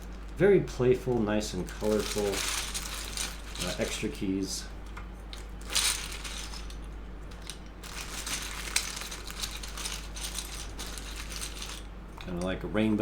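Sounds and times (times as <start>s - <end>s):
keycaps clicking and clattering: 1.2s - 4.2s, 4.9s - 12.3s.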